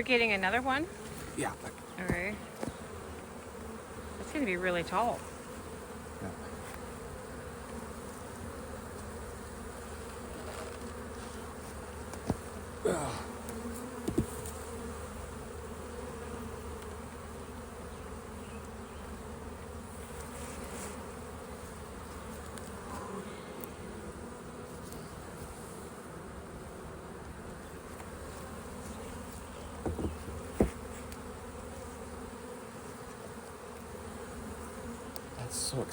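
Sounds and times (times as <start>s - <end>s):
bees buzzing: 0.0s - 35.9s.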